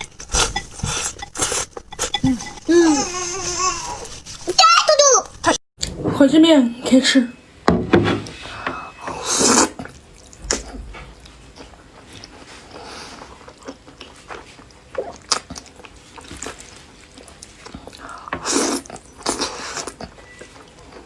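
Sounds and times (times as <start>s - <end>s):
chewing: 9.8s - 21.0s.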